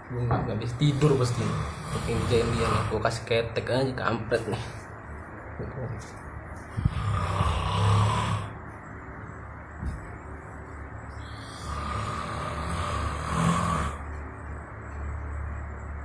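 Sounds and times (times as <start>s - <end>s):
man snoring: 0.8s - 3.1s, 6.8s - 8.6s, 11.3s - 14.0s.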